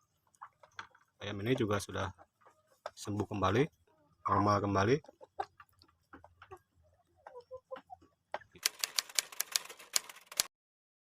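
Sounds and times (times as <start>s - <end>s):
rapid sharp clicks: 8.6s - 10.5s.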